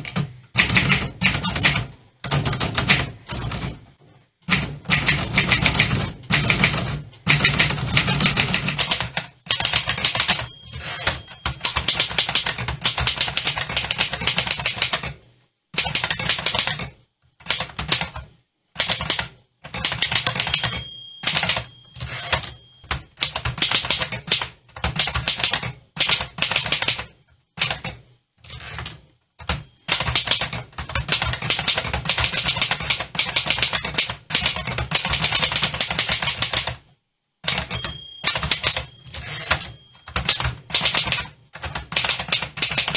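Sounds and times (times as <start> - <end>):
typewriter key strikes: 4.5 - 15.1, 18.8 - 27.0, 28.7 - 36.7, 37.4 - 42.9
typewriter bell ringing: 8.8 - 12.6, 20.0 - 23.2, 37.5 - 41.1.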